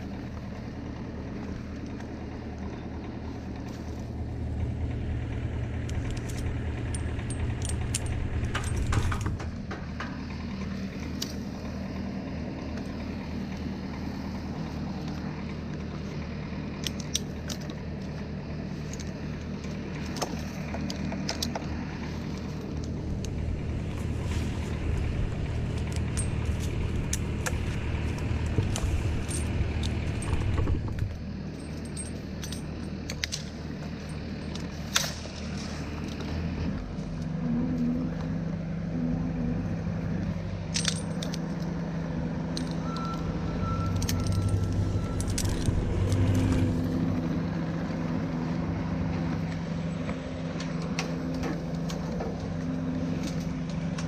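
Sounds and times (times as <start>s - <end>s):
large engine running: 0.0s - 54.0s
light metallic clinks: 24.6s - 35.2s, 40.7s - 41.8s.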